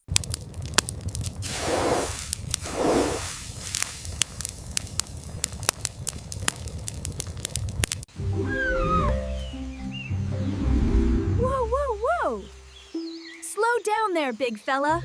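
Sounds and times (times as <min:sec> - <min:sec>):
crackling and sharp snaps: 0:00.0 - 0:08.1
short hissing: 0:01.4 - 0:04.0
low rumble: 0:08.7 - 0:12.8.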